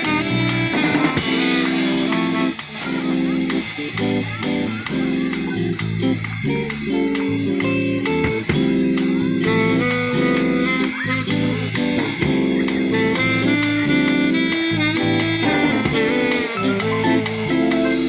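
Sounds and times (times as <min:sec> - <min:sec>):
saxophone sustained notes: 0:00.0 - 0:04.7, 0:08.8 - 0:18.0
live jazz band playing: 0:00.0 - 0:18.0.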